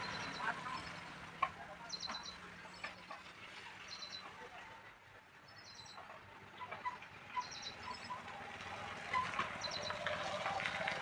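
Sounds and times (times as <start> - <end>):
small birds chirping: 0.0 - 1.2, 9.6 - 10.0.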